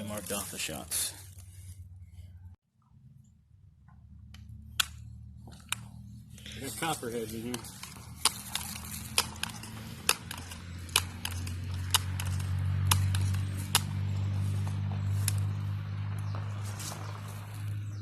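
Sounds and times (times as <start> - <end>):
low motor hum: 1.1 - 18.0
footsteps crunching: 5.4 - 18.0.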